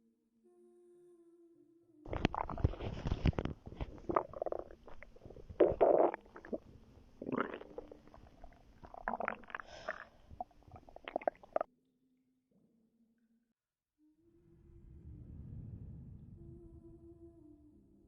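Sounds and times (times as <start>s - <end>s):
stomach gurgling: 2.1s - 11.7s.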